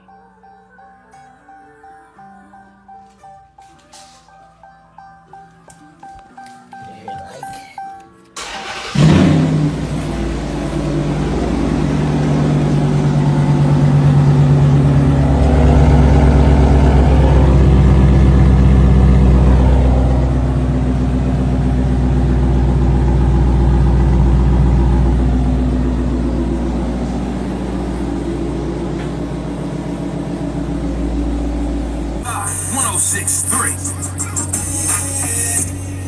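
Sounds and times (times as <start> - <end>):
car engine starting and rumbling: 8.4 - 36.0.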